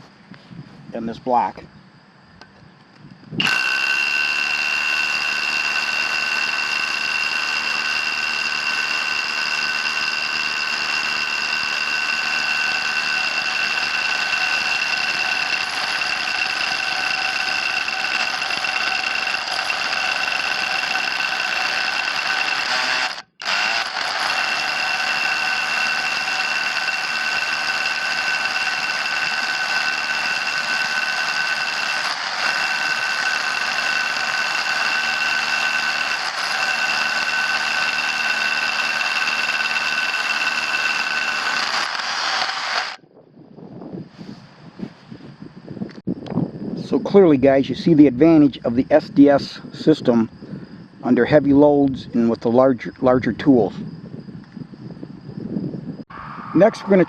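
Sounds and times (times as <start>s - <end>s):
rotary hammer drilling concrete: 3.4s - 43.0s, 56.6s - 57.0s.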